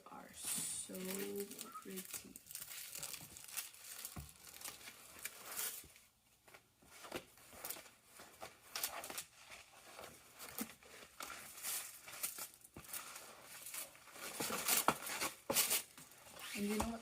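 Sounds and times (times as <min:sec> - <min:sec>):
vinyl and plastic wrapping rustling: 0:00.0 - 0:17.0.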